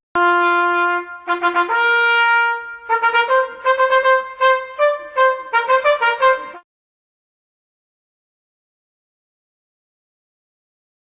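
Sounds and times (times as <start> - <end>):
solo trumpet melody: 0.2 - 6.7.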